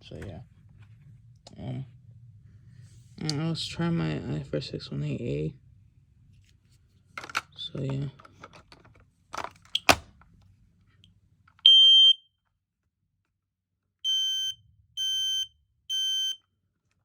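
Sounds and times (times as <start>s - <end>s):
clicks of handled unit: 7.2s - 10.2s
smoke alarm beeps: 11.6s - 12.3s, 14.0s - 16.4s.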